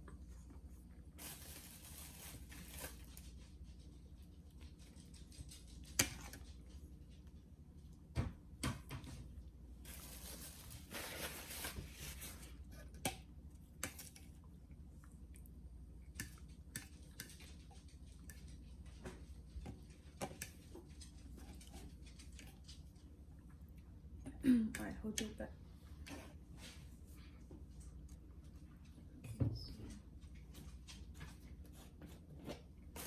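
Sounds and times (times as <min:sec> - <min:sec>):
soft chewing and squishing: 0:09.4 - 0:33.0.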